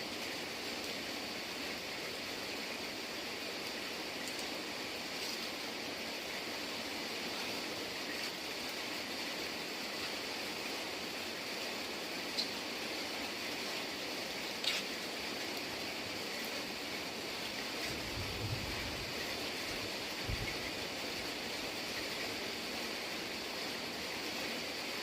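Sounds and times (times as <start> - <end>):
steady rain: 0.0 - 25.0
faint dripping ticks: 12.3 - 12.6, 14.5 - 15.6.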